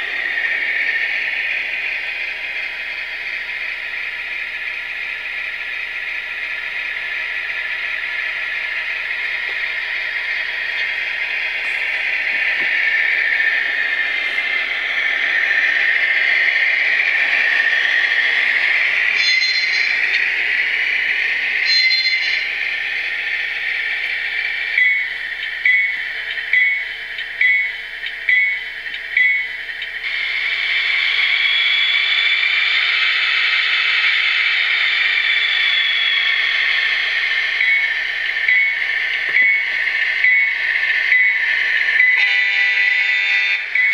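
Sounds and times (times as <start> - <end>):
diesel engine sound from small speaker: 0.0 - 43.9
locomotive bell dinging: 19.2 - 20.1, 21.6 - 22.5, 37.6 - 43.9.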